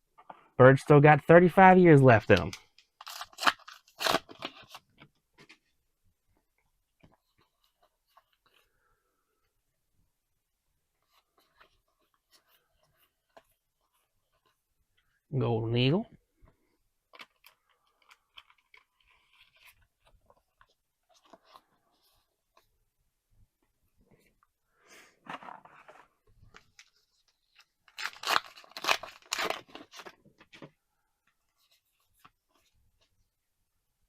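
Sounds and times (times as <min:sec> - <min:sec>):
cards rustling and clicking: 0:02.2 - 0:05.7, 0:17.1 - 0:22.7, 0:25.3 - 0:30.7
wrapper tearing and crinkling: 0:03.0 - 0:04.8, 0:27.8 - 0:30.2.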